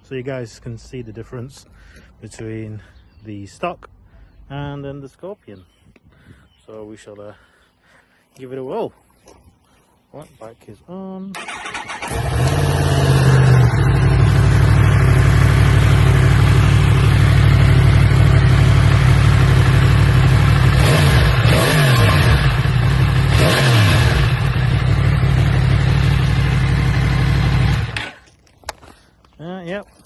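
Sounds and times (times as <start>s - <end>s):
motorcycle engine idling and revving: 11.4s - 28.3s.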